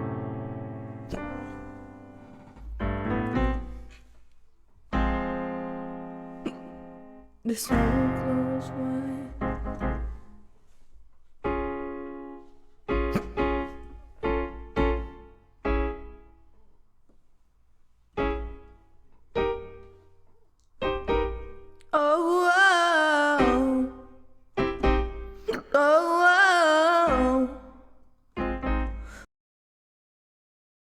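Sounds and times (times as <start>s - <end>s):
piano chords ringing: 0.0s - 4.2s, 4.9s - 16.8s, 18.2s - 27.8s, 28.4s - 29.3s
person singing long wavering notes: 7.5s - 9.4s, 21.9s - 24.2s.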